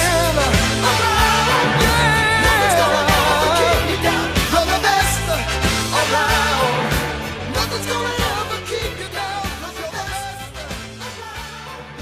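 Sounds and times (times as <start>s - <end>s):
pop-rock song with singing: 0.0s - 12.0s.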